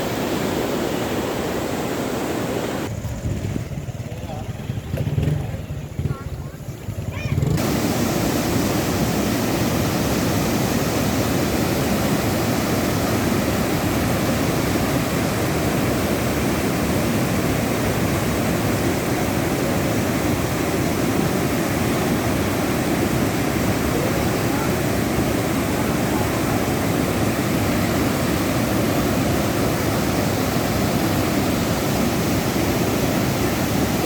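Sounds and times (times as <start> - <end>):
water pouring in a loud rush: 7.6 - 34.0.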